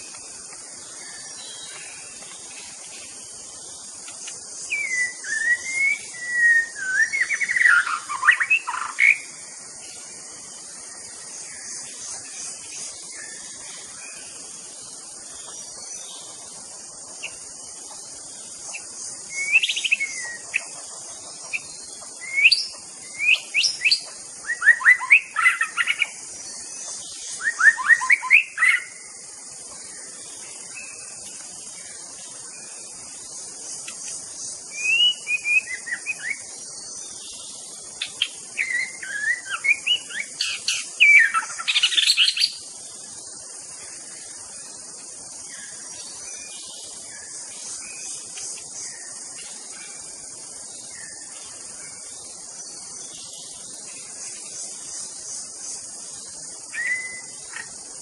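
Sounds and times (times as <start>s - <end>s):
steady high hiss: 0.0s - 58.0s
bird singing whistled phrases: 4.7s - 9.2s, 19.4s - 20.4s, 22.2s - 26.1s, 27.4s - 28.9s, 34.8s - 36.4s, 38.6s - 42.6s, 56.7s - 57.3s.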